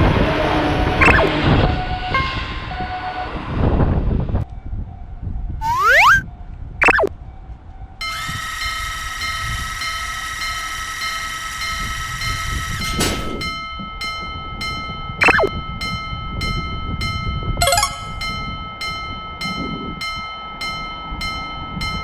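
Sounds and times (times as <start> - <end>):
cartoon swooping glide: 1.0 - 1.4, 5.6 - 6.2, 6.8 - 7.1, 15.2 - 15.5.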